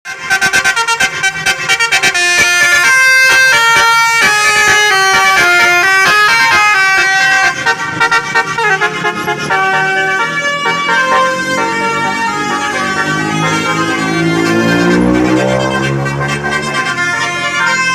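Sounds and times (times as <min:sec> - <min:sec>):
multi-tone bus horn tune: 0:00.0 - 0:17.9.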